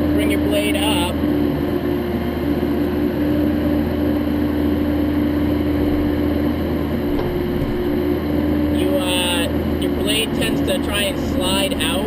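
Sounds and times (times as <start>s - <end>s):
diesel engine droning: 0.0s - 12.0s
steady higher hum: 0.0s - 12.0s.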